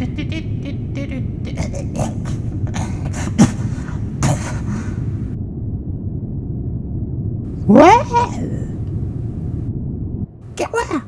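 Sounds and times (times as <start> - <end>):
low rumble: 0.0 - 10.6
person making beatbox mouth sounds: 1.5 - 4.8.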